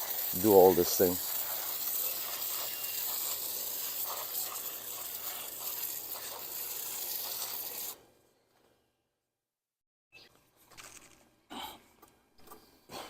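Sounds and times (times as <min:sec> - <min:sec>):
spray can hissing: 0:00.0 - 0:08.0.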